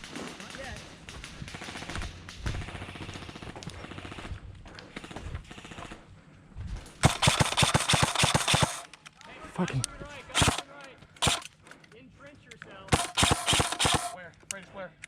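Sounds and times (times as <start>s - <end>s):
airsoft rifle full-auto burst: 7.0s - 8.9s, 10.3s - 11.5s, 12.9s - 14.2s
airsoft rifle shots: 7.0s - 8.9s, 10.3s - 11.5s, 12.9s - 14.2s
gun clicks: 7.0s - 14.7s
person speaking: 9.3s - 10.7s.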